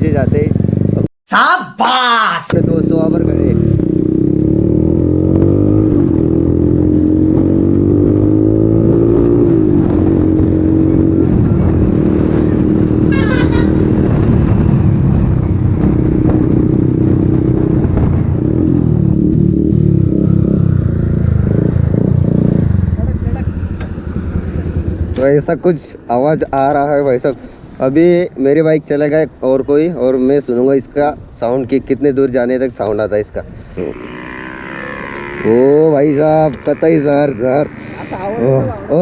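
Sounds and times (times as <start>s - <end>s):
motorcycle engine revving: 0.0s - 1.1s, 2.6s - 25.3s, 33.7s - 39.0s.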